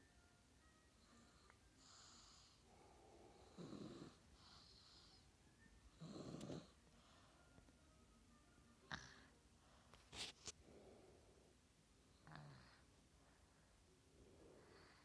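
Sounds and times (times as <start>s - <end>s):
faint airy breaths: 1.0s - 5.4s, 6.0s - 7.7s, 9.0s - 15.0s
baby snoring softly: 3.3s - 5.3s, 6.0s - 6.8s, 12.2s - 12.9s.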